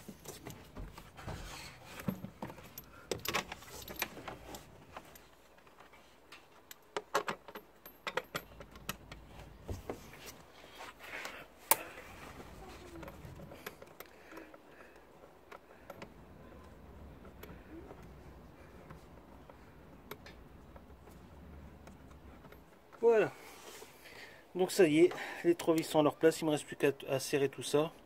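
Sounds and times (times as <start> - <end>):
metallic clicks of screws and tools: 1.9 - 9.6.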